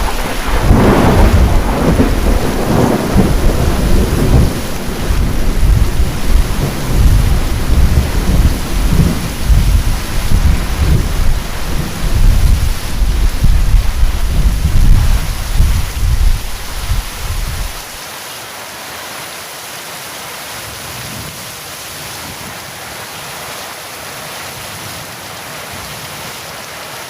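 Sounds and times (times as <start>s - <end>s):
thunder rumbling: 0.0s - 18.0s
heavy rain pouring: 0.0s - 27.0s.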